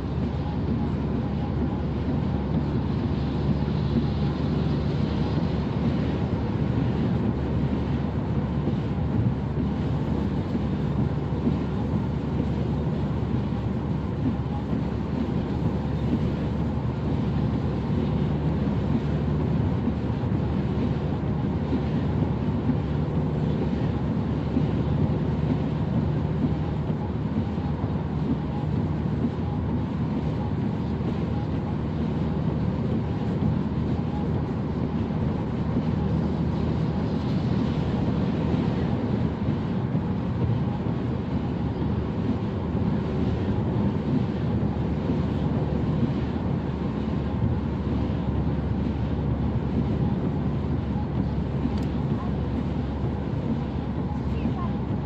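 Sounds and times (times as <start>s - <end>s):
car driving on motorway: 0.0s - 55.0s.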